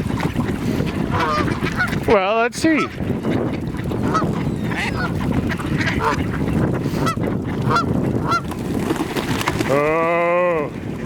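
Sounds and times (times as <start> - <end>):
geese honking: 0.8 - 8.4
low chatter of waterfowl: 1.1 - 6.3.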